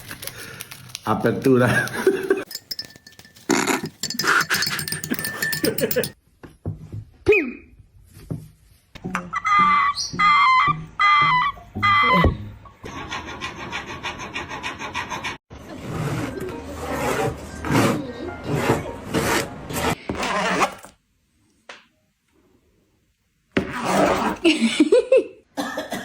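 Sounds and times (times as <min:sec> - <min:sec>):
music: 0:09.0 - 0:12.9, 0:16.0 - 0:19.9
rasping rubbing sound: 0:12.9 - 0:20.9, 0:23.6 - 0:24.4.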